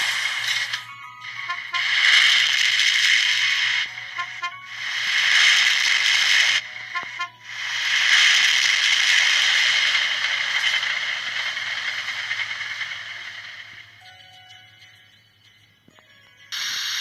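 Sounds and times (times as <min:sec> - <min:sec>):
buzzy horn blasts: 0:01.2 - 0:02.5, 0:03.6 - 0:05.6, 0:06.8 - 0:07.6.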